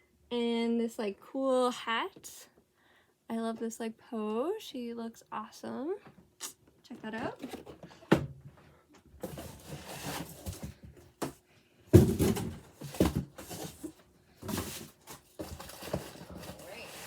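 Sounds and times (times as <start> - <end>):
cardboard boxes rustling and scraping: 7.2 - 8.4, 9.2 - 17.0
box thump: 10.4 - 13.8.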